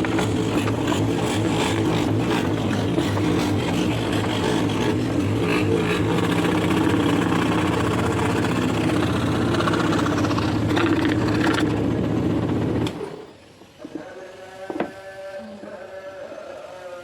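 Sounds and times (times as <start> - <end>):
scroll saw running: 0.0 - 13.2.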